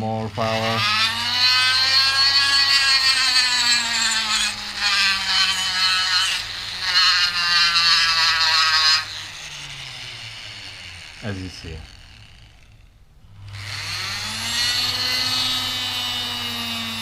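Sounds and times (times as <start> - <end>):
grinder motor whining: 0.1 - 17.0.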